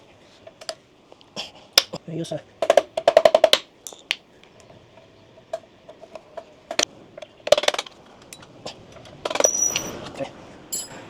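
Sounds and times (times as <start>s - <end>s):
metallic clicks from hand tools: 3.8s - 4.2s
scraping clatter with high ring: 7.6s - 11.0s.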